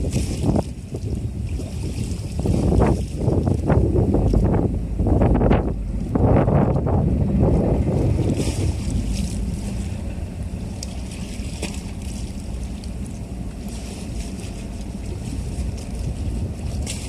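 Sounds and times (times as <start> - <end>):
wind rumbling on microphone: 0.0 - 17.0
ferry engines droning: 3.4 - 17.0.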